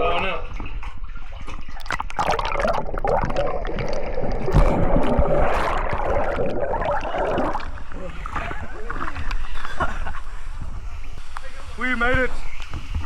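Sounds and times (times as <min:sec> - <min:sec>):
water splashing and gurgling: 0:00.7 - 0:09.3
low thumps: 0:01.7 - 0:08.0.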